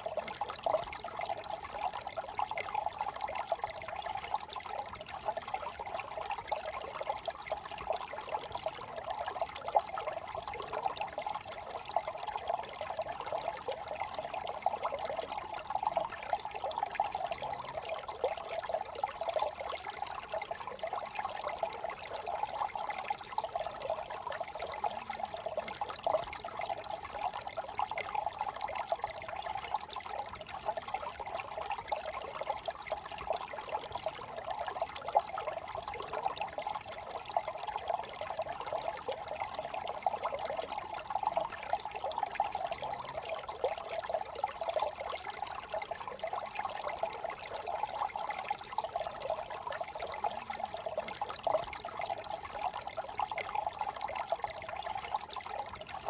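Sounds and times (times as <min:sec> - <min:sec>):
brook water trickling: 0:00.0 - 0:56.0.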